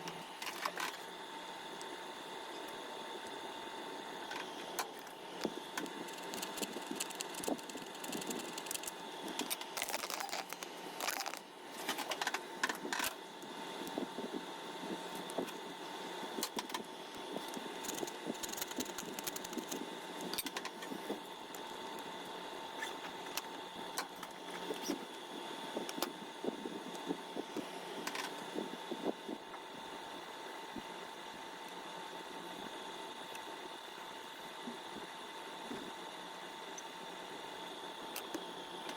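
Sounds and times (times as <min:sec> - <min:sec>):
faint steady hum: 0:00.0 - 0:38.9
clicks and scrapes of handling parts: 0:04.3 - 0:13.2, 0:16.4 - 0:21.1.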